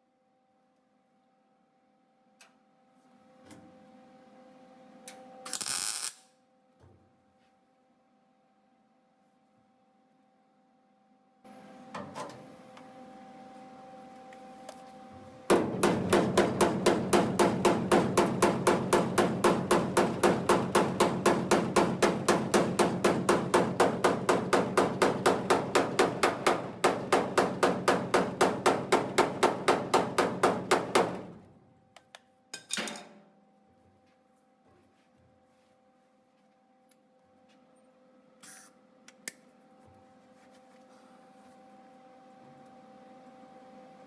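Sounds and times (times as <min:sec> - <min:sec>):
hammering on sheet steel: 0:15.5 - 0:31.4.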